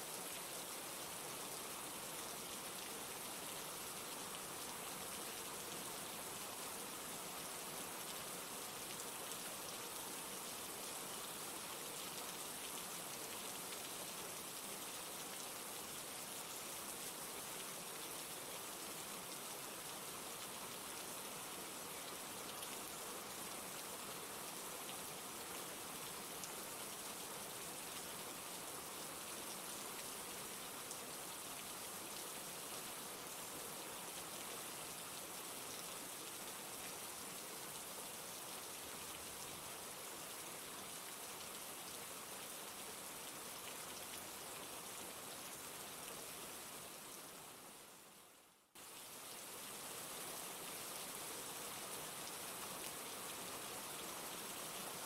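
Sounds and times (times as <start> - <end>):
steady rainfall: 0.0 - 55.0.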